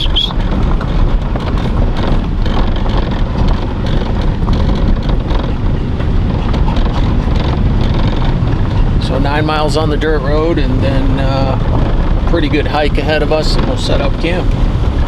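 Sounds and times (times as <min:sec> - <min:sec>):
small rattles and knocks: 0:00.0 - 0:09.2
tyres and engine rumbling: 0:00.0 - 0:15.0.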